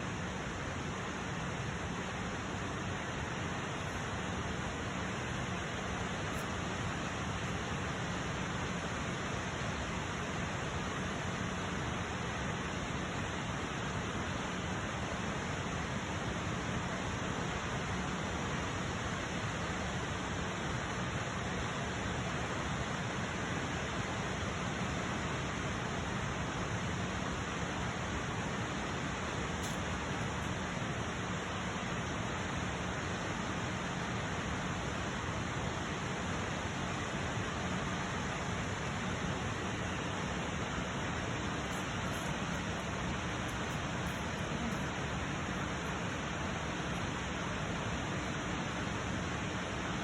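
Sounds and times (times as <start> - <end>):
waterfall rushing: 38.6 - 50.0.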